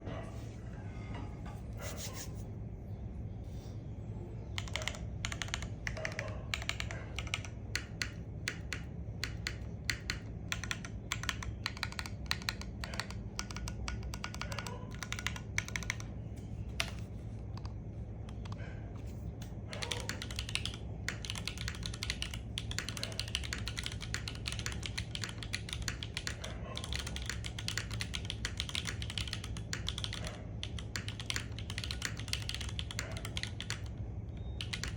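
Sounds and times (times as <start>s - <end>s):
steady low hum: 0.0s - 34.9s
mechanical keyboard key clacks: 4.6s - 16.0s, 19.7s - 33.9s, 34.6s - 34.9s.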